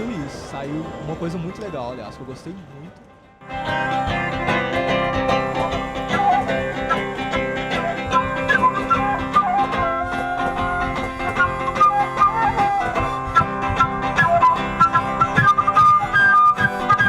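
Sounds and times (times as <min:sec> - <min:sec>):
acoustic blues guitar: 0:03.4 - 0:17.0.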